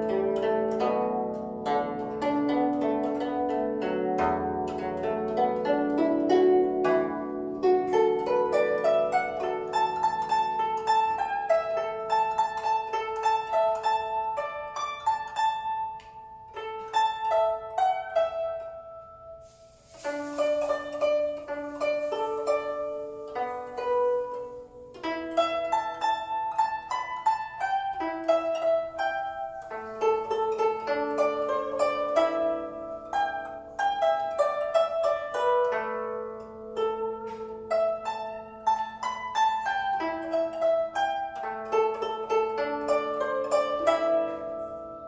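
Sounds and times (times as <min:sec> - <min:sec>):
plucked zither melody: 0:00.0 - 0:45.0.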